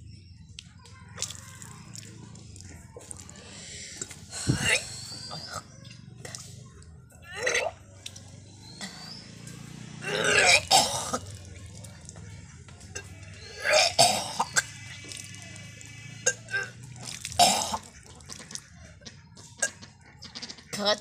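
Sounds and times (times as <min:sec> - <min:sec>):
person retching and gagging: 0:03.9 - 0:05.7, 0:07.3 - 0:07.8, 0:10.0 - 0:11.4, 0:13.0 - 0:15.3, 0:16.2 - 0:18.6.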